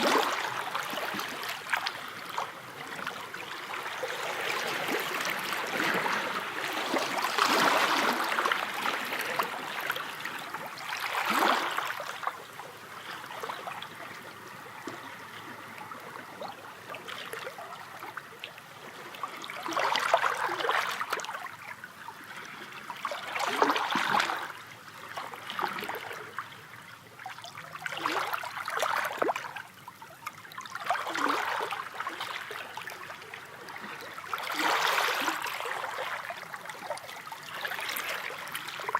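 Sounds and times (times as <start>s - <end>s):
sea waves splashing: 0.0s - 12.4s.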